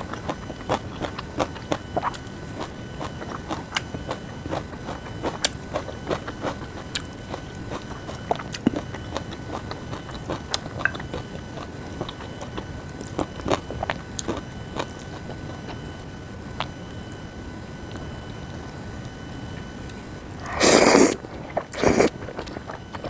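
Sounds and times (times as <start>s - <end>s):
person chewing food: 0.0s - 15.8s, 19.9s - 23.0s.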